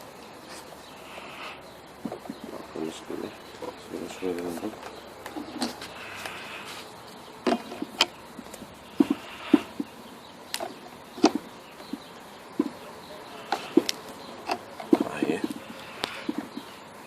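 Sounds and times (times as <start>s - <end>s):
tools clicking and knocking: 7.4s - 8.2s.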